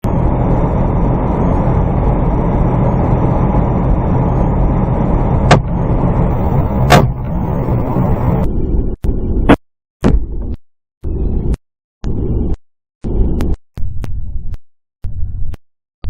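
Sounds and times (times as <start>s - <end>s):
moving vehicle rumble: 0.0s - 8.5s
sharp knocks: 5.5s - 5.8s, 6.4s - 8.4s.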